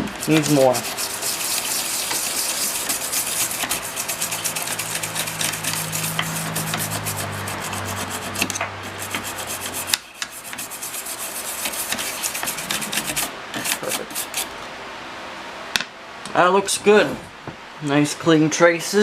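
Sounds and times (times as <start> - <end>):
toothbrush scrubbing circuit board: 0.0 - 14.5.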